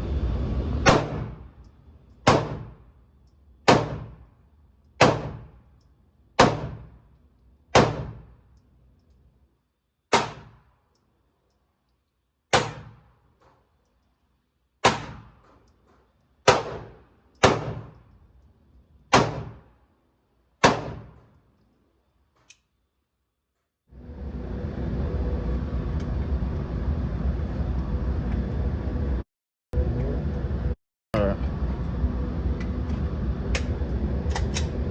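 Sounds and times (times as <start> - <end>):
steady rumbling noise: 0.0 - 7.0, 24.0 - 29.2, 29.8 - 34.9
gunshots with ringing tail: 0.8 - 1.4, 2.3 - 2.8, 3.7 - 4.2, 5.0 - 5.5, 6.4 - 6.9, 16.5 - 17.9, 20.6 - 21.2.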